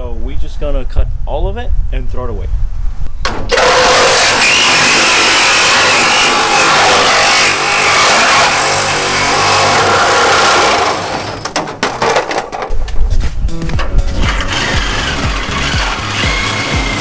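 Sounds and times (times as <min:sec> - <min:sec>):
power tool cutting sheet metal: 0:03.3 - 0:11.5, 0:14.1 - 0:17.0.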